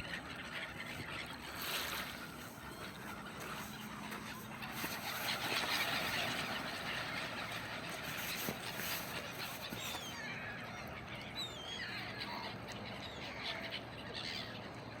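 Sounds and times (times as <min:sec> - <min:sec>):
birds whistling calls: 0:07.4 - 0:13.7.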